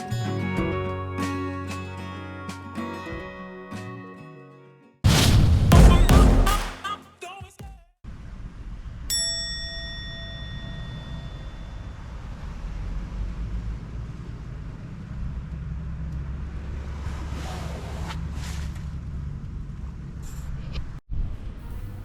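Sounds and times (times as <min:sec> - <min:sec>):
bright bell ding: 0:09.1 - 0:11.9.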